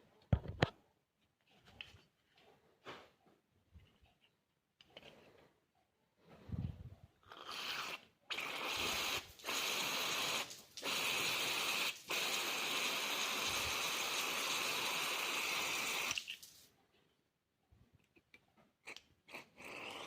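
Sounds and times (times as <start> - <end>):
aerosol spray hissing: 7.8 - 16.5.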